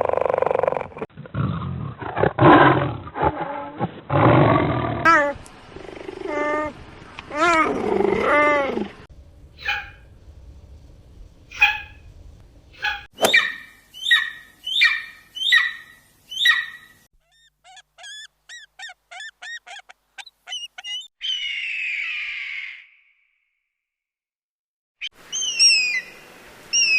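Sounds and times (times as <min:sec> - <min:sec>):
animal cries: 0:09.6 - 0:10.0, 0:11.5 - 0:12.0, 0:12.8 - 0:22.9
wavering animal call: 0:09.6 - 0:10.0, 0:11.5 - 0:12.0, 0:12.8 - 0:22.8.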